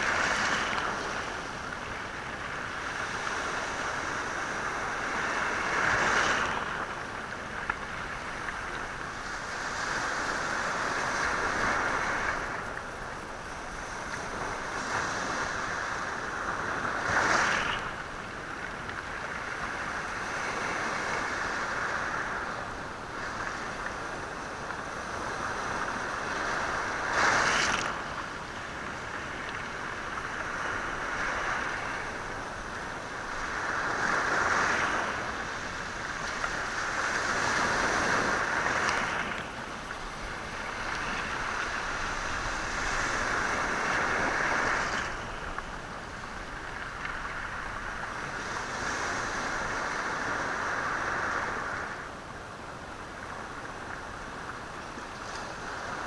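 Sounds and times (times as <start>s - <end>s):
waves washing over stony shore: 0.0s - 56.0s.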